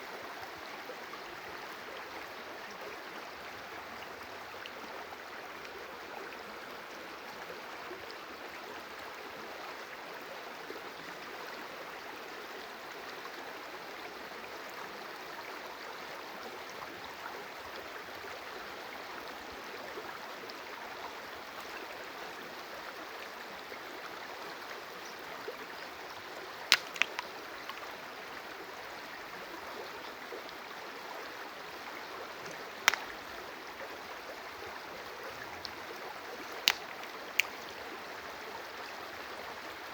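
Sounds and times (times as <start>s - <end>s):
stream of water flowing: 0.0s - 39.9s
sharp clicks: 26.7s - 27.9s, 32.4s - 33.3s, 36.4s - 37.7s.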